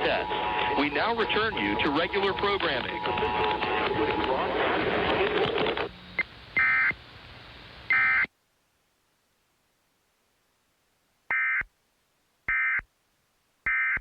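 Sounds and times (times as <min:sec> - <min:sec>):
harsh digital data bursts: 0:00.0 - 0:04.8
faint hiss: 0:05.9 - 0:13.6.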